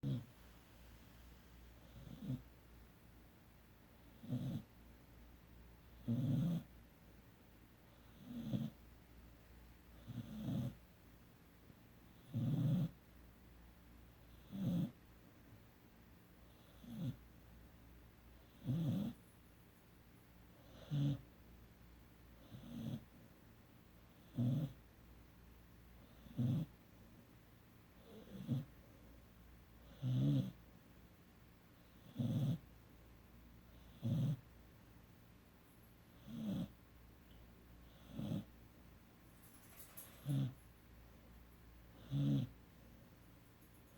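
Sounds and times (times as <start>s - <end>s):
puppy snoring: 0.0s - 0.3s, 1.8s - 2.5s, 4.0s - 4.8s, 5.8s - 6.7s, 7.9s - 8.8s, 9.9s - 10.8s, 12.1s - 13.0s, 14.2s - 15.0s, 16.4s - 17.3s, 18.4s - 19.2s, 20.5s - 21.3s, 22.4s - 23.1s, 24.1s - 24.8s, 26.0s - 26.8s, 28.0s - 28.8s, 29.8s - 30.6s, 31.8s - 32.7s, 33.7s - 34.5s, 36.1s - 36.8s, 37.8s - 38.6s, 39.6s - 40.6s, 41.9s - 42.6s.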